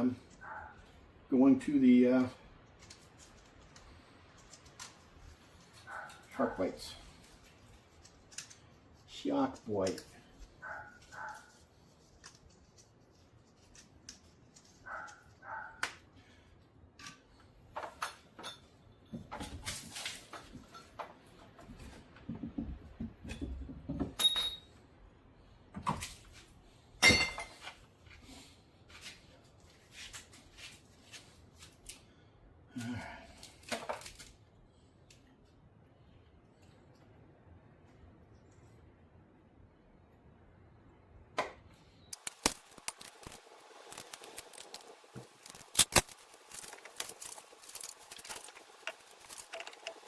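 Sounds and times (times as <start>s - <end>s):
plumbing fittings and tools clinking: 17.0s - 21.5s, 23.3s - 24.8s, 27.0s - 27.8s.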